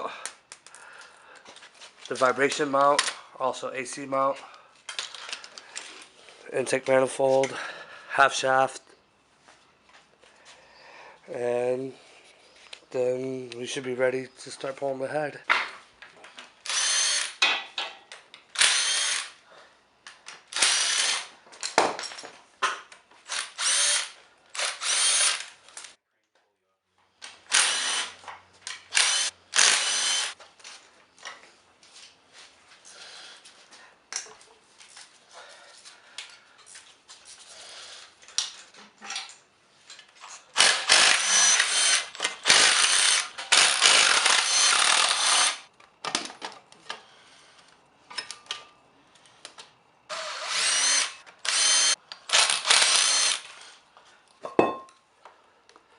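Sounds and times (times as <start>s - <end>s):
power tool whining: 28.9s - 30.4s, 40.6s - 45.6s, 50.1s - 53.6s.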